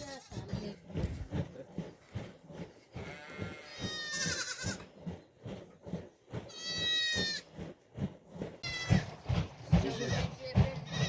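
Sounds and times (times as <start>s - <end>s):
goat bleating: 3.0s - 4.8s, 6.5s - 7.4s.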